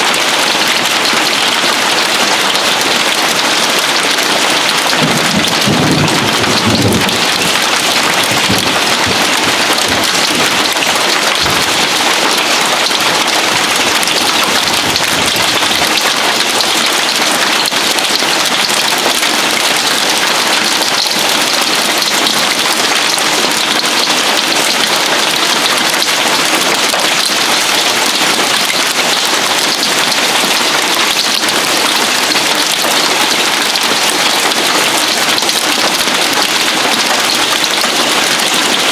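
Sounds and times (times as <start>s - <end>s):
heavy hail on roof: 0.0s - 38.9s
low rumble of thunder: 5.0s - 10.7s.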